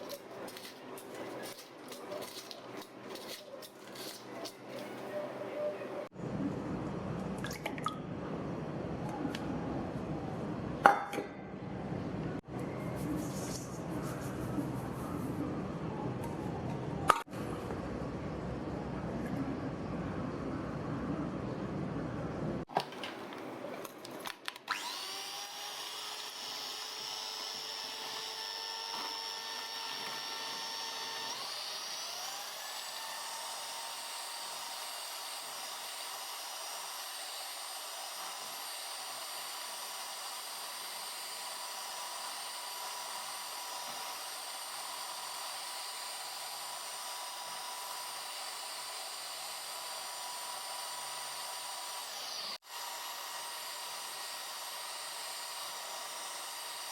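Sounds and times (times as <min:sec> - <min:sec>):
electric mixer whining: 0:24.7 - 0:56.9.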